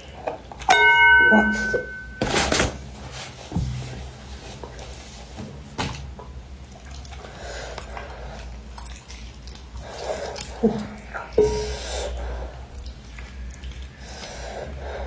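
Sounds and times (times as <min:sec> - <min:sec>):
wet sticky eating sounds: 0:06.8 - 0:15.0.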